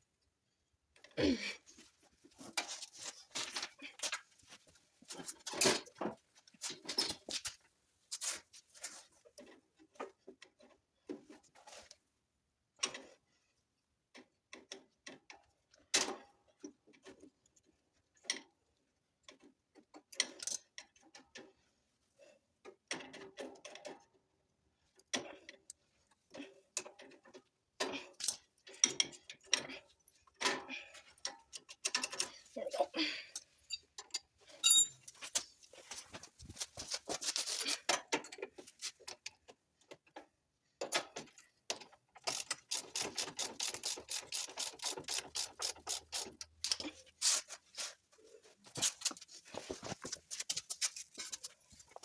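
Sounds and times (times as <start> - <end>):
hand tools and metal parts clinking: 26.3 - 32.6, 33.3 - 36.1.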